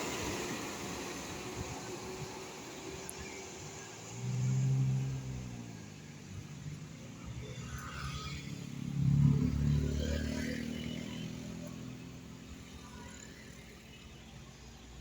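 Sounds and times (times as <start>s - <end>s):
vehicle driving past: 4.1s - 13.7s.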